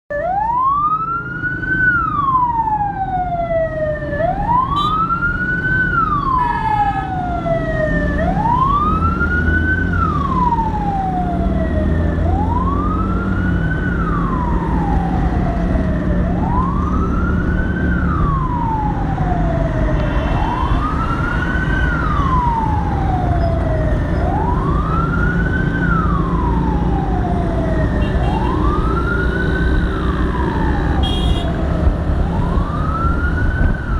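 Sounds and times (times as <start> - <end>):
ambulance siren wailing: 0.1 - 33.9
road traffic rumble: 0.1 - 33.9
horn toots: 31.0 - 31.6.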